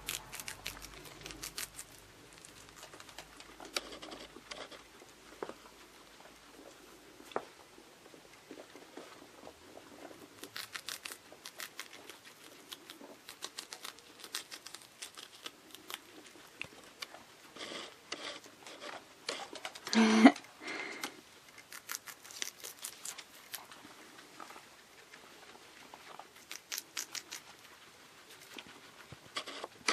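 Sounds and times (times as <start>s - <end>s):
guinea pig squeak: 0.0s - 4.8s, 10.2s - 18.9s, 26.3s - 29.9s
guinea pigs scuffling: 0.0s - 19.9s, 21.4s - 29.9s.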